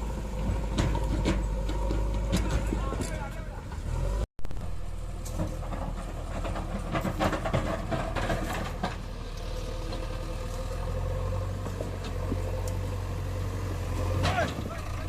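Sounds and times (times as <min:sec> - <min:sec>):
diesel engine running: 0:00.0 - 0:15.0
knocks and clatter: 0:00.3 - 0:03.9, 0:04.5 - 0:10.8.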